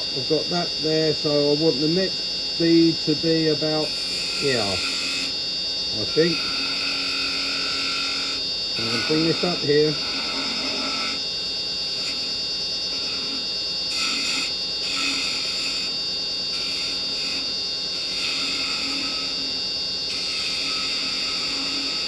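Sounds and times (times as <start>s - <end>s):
wood lathe motor hum: 0.0s - 22.0s
chisel scraping wood: 8.8s - 11.2s.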